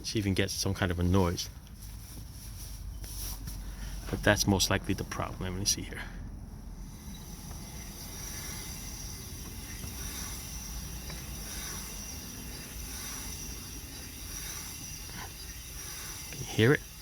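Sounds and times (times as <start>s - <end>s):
faint brake scrape: 1.2s - 5.4s, 6.6s - 17.0s
brake dragging on spinning wheel: 6.6s - 17.0s.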